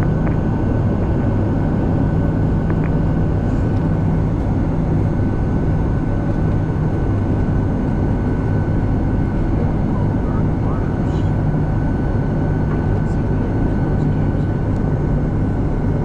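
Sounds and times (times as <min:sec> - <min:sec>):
jet engines droning: 0:00.0 - 0:16.0.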